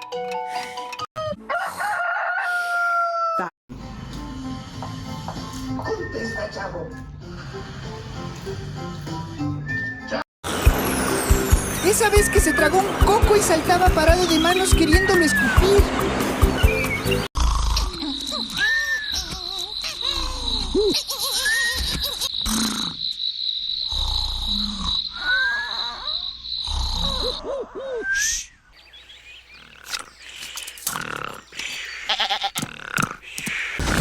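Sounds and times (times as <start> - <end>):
cartoon snoring: 17.4 - 18.5, 22.4 - 23.0, 23.9 - 27.7.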